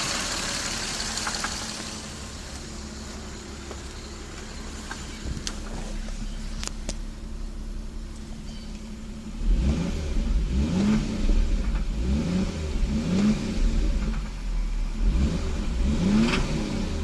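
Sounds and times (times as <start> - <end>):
car engine idling and revving: 0.0 - 17.0.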